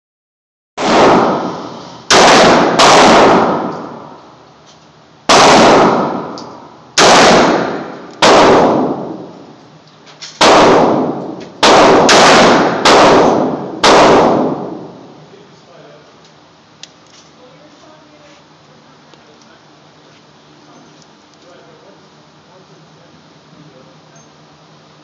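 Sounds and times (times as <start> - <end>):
revolver gunshots with echo: 0.8 - 4.2, 5.3 - 9.4, 10.4 - 15.1.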